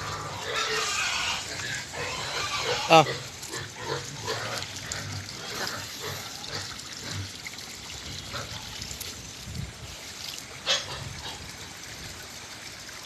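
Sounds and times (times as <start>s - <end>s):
water trickling: 0.0s - 13.0s.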